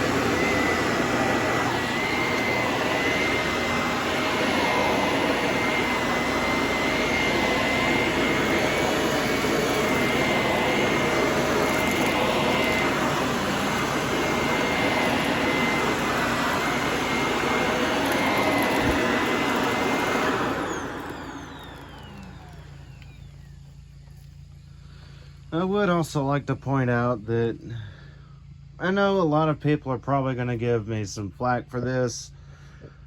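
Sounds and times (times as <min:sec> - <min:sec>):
vacuum motor winding down: 0:00.0 - 0:24.6
vacuum cleaner whining: 0:00.0 - 0:28.1.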